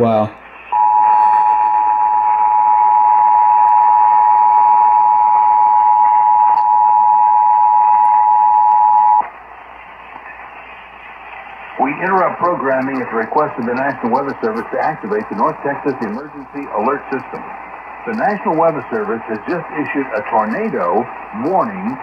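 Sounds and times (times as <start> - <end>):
faint broadcast hiss: 0.0 - 1.8, 9.1 - 22.0.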